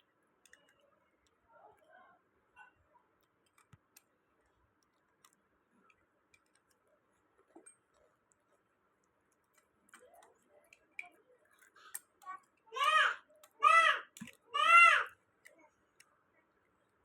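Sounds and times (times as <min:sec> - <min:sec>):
faint clicks: 0:00.0 - 0:02.0.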